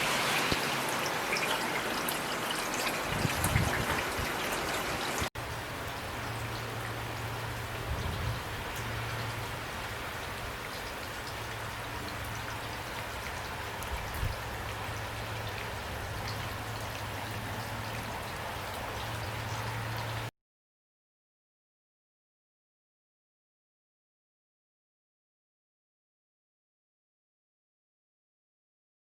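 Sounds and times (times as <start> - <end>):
rain falling on leaves: 0.0 - 20.3.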